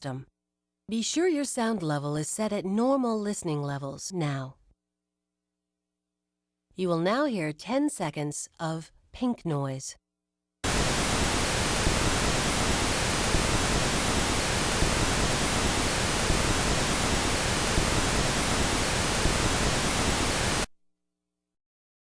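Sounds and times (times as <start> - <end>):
pink noise hiss: 10.6 - 20.7.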